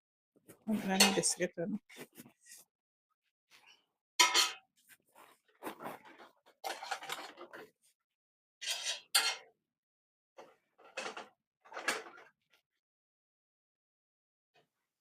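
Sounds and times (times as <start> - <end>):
pans and dishes clattering: 0.8 - 1.4, 4.2 - 4.7, 6.0 - 7.6, 8.6 - 9.5.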